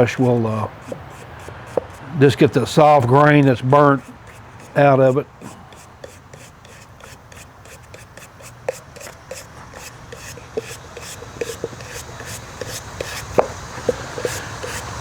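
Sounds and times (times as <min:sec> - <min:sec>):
wire brush scrubbing wood: 0:00.0 - 0:15.0
small knocks: 0:08.7 - 0:14.3.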